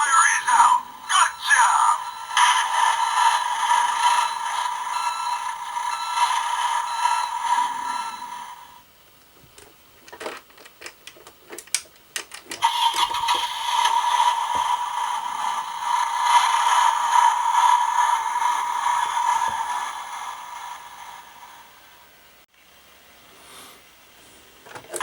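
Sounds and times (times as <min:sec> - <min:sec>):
clicks and clatter: 0:09.5 - 0:13.4.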